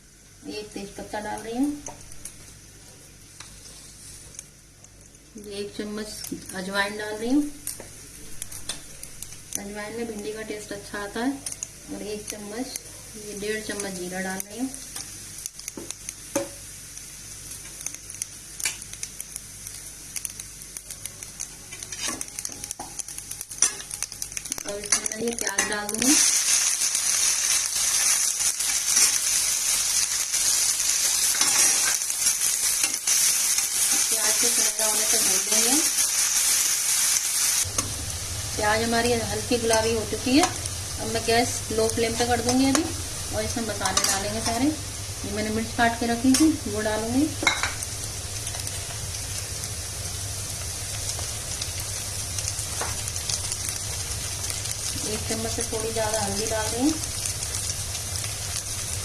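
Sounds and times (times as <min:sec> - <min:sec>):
onions sizzling in oil: 0:00.0 - 0:59.0
steady low hum: 0:37.6 - 0:59.0.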